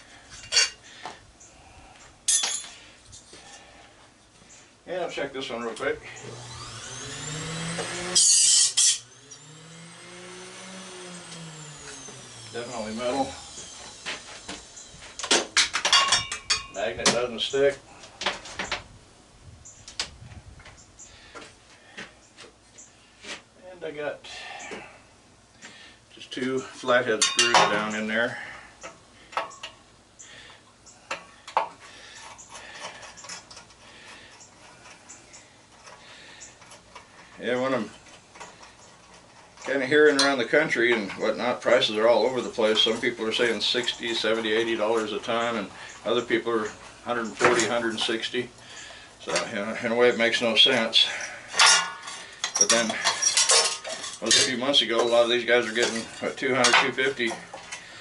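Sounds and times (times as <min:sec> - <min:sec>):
grinding bursts on metal: 0:06.0 - 0:16.6, 0:31.1 - 0:58.0
angle grinder motor whine: 0:06.0 - 0:16.7.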